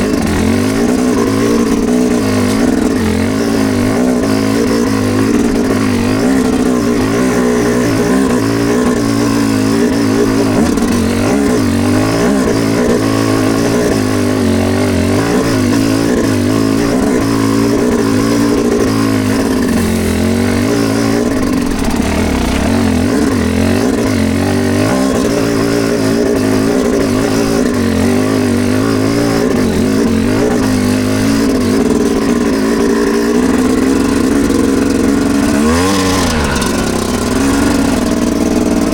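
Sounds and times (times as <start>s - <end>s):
dirt bike engine revving: 0.0s - 38.9s.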